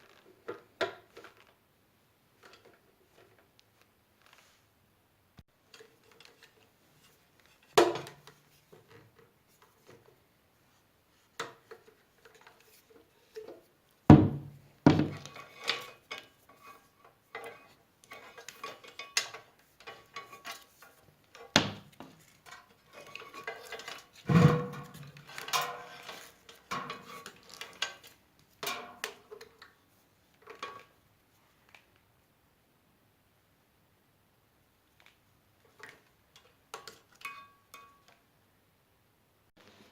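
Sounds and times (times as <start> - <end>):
metal parts clanking: 22.4 - 29.3.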